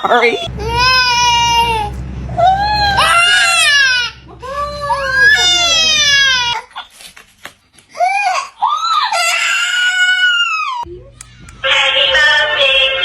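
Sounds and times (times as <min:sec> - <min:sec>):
baby crying: 0:00.0 - 0:06.8, 0:08.0 - 0:10.9.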